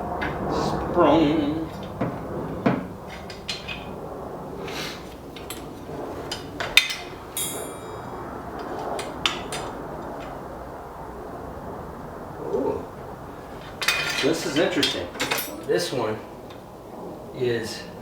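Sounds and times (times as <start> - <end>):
high metallic ring: 6.9 - 9.6.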